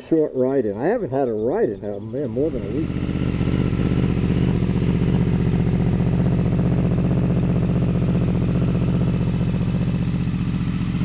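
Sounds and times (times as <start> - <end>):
motorcycle engine idling: 0.7 - 11.0.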